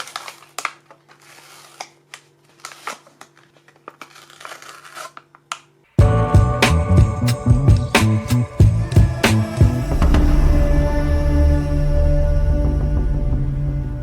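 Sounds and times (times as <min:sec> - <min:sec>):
packaging crinkling and tearing: 0:00.0 - 0:05.7
loud music with a beat: 0:06.0 - 0:11.0.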